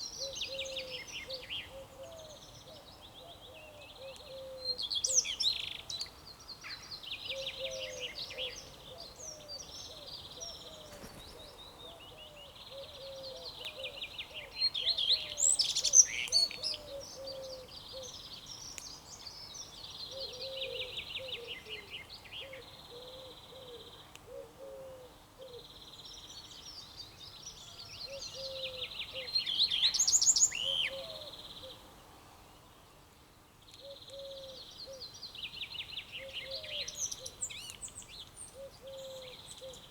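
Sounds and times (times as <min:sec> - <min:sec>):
songbirds singing trilled phrases: 0:00.0 - 0:24.2, 0:25.6 - 0:31.8.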